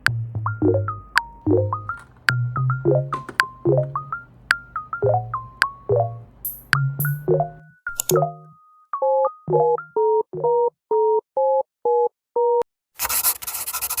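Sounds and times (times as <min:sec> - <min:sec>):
short synth notes: 0:00.0 - 0:08.6
two-tone synth beeps: 0:00.5 - 0:12.6.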